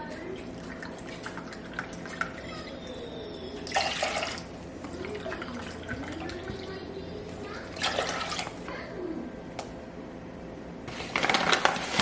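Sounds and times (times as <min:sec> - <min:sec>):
water running from tap: 0:00.3 - 0:02.9, 0:07.8 - 0:08.6.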